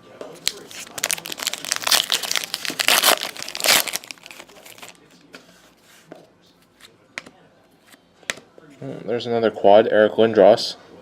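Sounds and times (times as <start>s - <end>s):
card pack wrapper crinkling: 0.4s - 5.0s.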